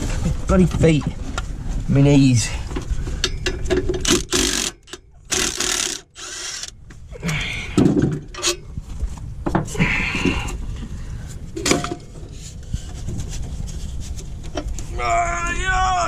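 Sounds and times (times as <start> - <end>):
hand tools clattering on metal: 3.2 - 4.6.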